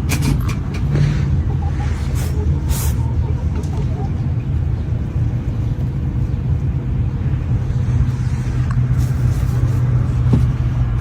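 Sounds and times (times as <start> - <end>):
low engine rumble: 0.0 - 11.0.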